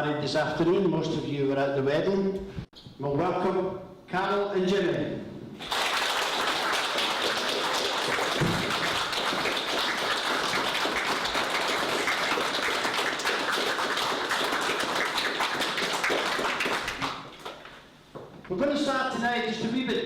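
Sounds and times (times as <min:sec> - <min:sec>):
crowd applauding: 0:05.6 - 0:17.7.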